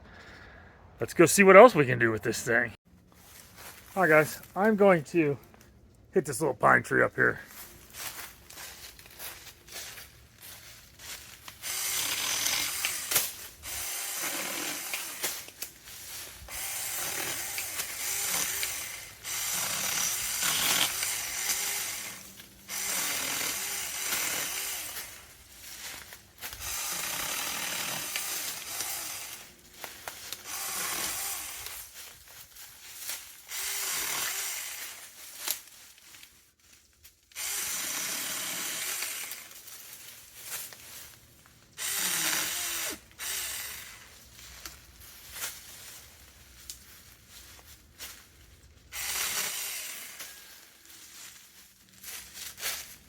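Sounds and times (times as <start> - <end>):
battery chainsaw cutting branches: 10.5 - 32.0, 33.0 - 35.7, 37.2 - 40.0, 41.8 - 44.2, 48.9 - 51.4.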